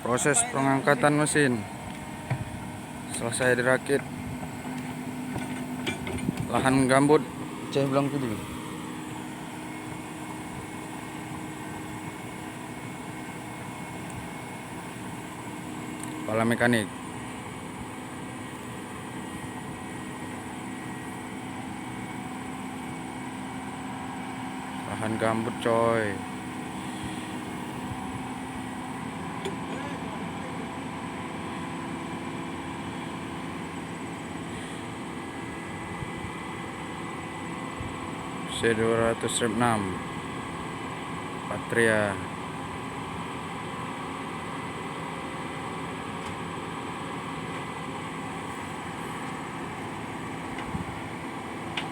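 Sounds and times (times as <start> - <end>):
engine droning: 0.0 - 51.9.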